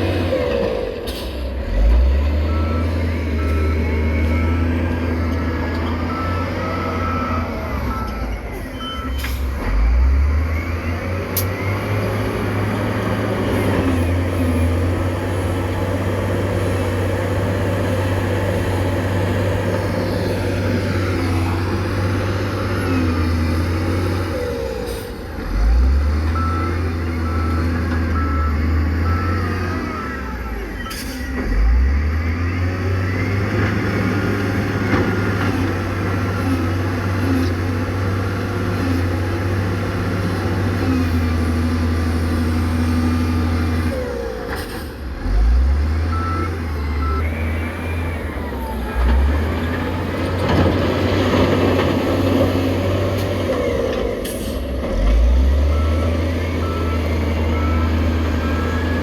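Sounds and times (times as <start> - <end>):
diesel machinery engine rumble: 0.0 - 59.0
reversing alarm beeping: 1.8 - 12.8, 26.2 - 34.9, 46.0 - 50.1, 55.3 - 59.0.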